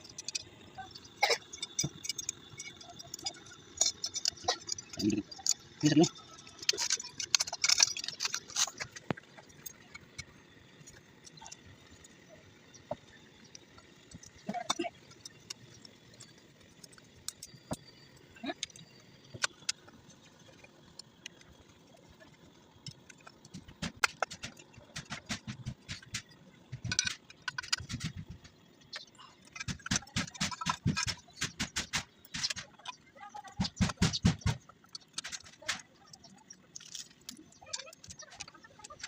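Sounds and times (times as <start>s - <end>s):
metal parts clinking: 0.0s - 12.2s, 22.8s - 39.0s.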